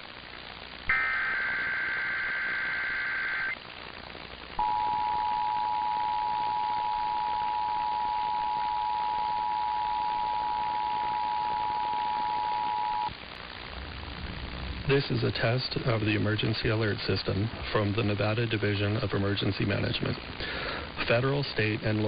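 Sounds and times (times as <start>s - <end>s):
radio hiss: 0.0s - 22.0s
shrill warbling data tones: 0.9s - 3.6s
two-tone attention signal: 4.6s - 13.1s.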